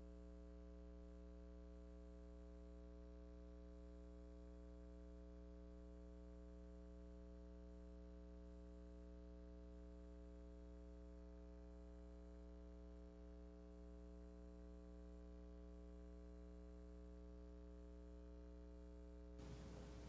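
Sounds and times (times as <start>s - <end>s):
faint high-pitched tones: 19.4s - 20.0s
steady low hum: 19.4s - 20.0s.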